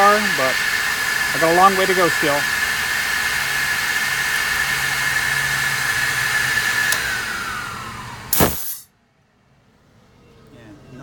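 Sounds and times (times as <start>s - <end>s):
cooling fans whining: 0.0s - 11.0s
air blast from valve: 8.3s - 8.9s.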